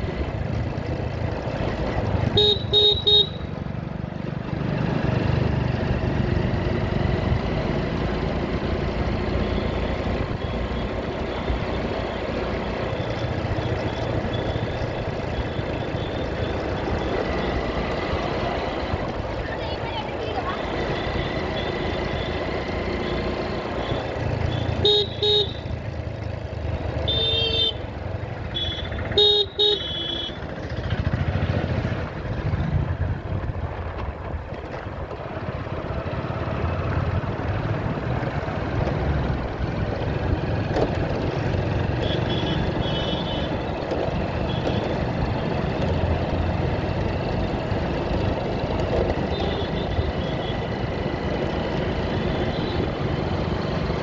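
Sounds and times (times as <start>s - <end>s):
motorbike engine and wind rumble: 0.0s - 54.0s
vehicle horn beeps: 2.2s - 3.6s, 23.0s - 25.8s, 27.0s - 30.5s, 42.0s - 43.6s, 49.2s - 50.7s, 52.4s - 53.0s.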